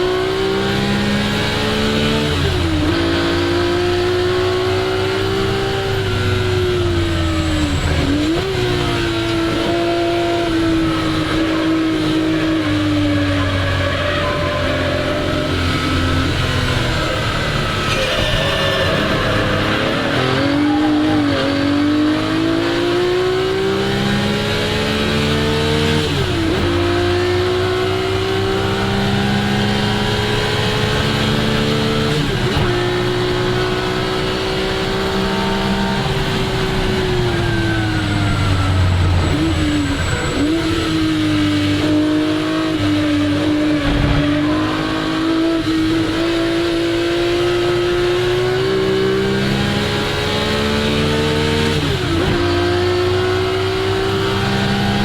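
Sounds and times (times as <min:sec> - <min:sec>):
car engine revving at full throttle: 0:00.0 - 0:55.0.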